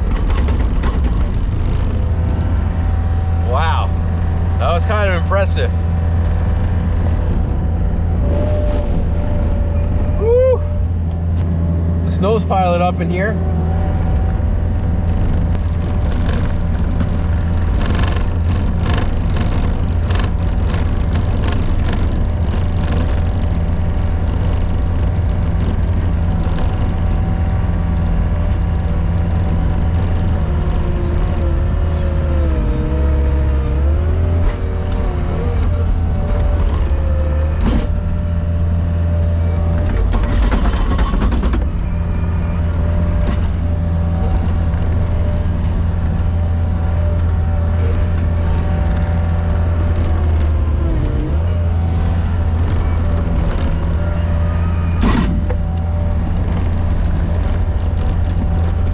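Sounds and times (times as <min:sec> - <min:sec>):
machine clicks and rattles: 0:00.0 - 0:02.4, 0:15.2 - 0:31.4, 0:39.8 - 0:41.8
diesel engine at full throttle: 0:00.0 - 0:58.9.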